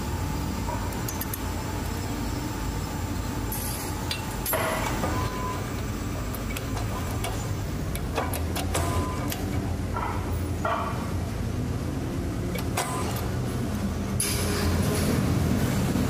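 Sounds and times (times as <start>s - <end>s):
workshop machine humming: 0.0s - 16.0s
sharp metallic clicks and knocks: 0.7s - 2.0s, 4.0s - 11.1s.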